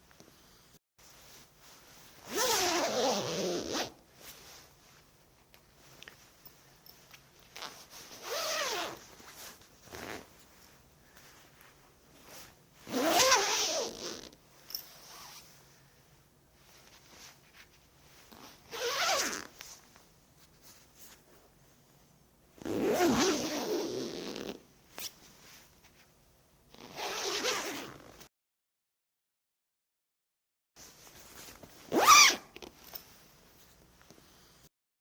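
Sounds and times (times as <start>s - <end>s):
clothing zipper zipping: 2.2s - 4.6s, 7.6s - 10.3s, 12.2s - 15.5s, 18.2s - 19.6s, 22.6s - 25.2s, 26.7s - 28.3s, 31.9s - 32.7s.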